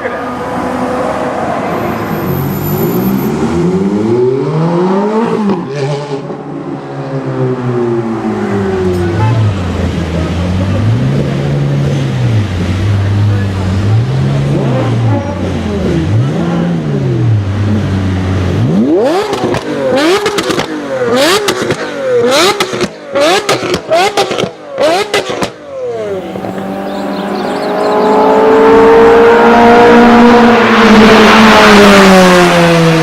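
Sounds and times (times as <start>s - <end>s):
sports car engine revving: 7.5s - 33.0s.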